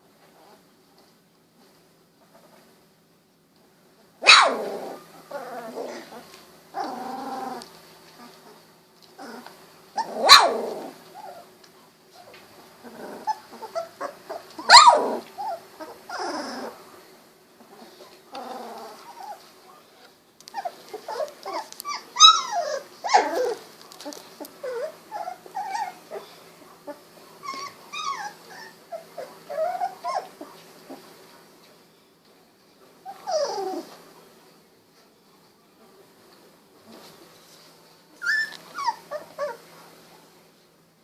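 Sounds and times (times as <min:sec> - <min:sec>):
puppies whining: 0:04.2 - 0:17.0, 0:17.6 - 0:31.1, 0:33.0 - 0:34.2, 0:38.1 - 0:39.8
puppies growling: 0:04.2 - 0:31.5, 0:33.0 - 0:34.2, 0:36.8 - 0:40.1.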